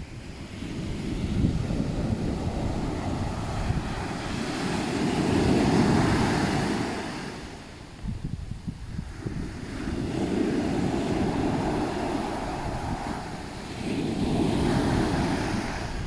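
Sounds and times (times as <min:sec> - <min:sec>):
wind buffeting microphone: 0:00.0 - 0:16.0
surf breaking on beach: 0:09.1 - 0:16.0.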